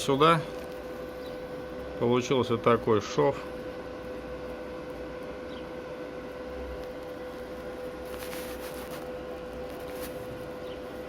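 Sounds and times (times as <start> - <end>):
welder cooling fan hum: 0.0 - 11.0
faint rustles: 7.0 - 10.5.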